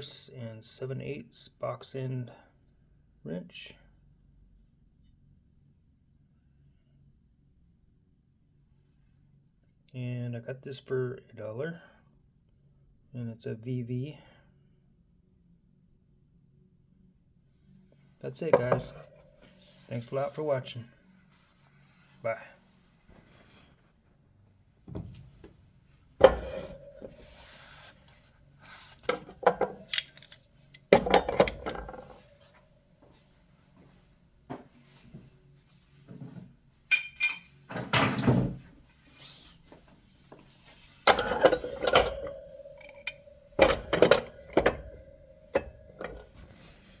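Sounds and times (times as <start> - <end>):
metal tools clanking on hard surface: 18.4 - 20.2, 26.2 - 32.5, 36.9 - 38.5, 41.1 - 47.0
lingering metallic ring: 26.2 - 28.3, 41.1 - 47.0.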